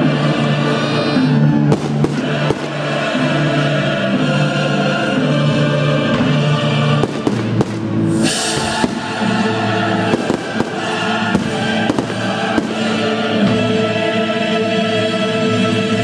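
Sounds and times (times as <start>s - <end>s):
fireworks bangs: 1.6s - 3.8s, 6.9s - 13.8s
fireworks crackle: 1.7s - 3.1s, 7.0s - 13.3s.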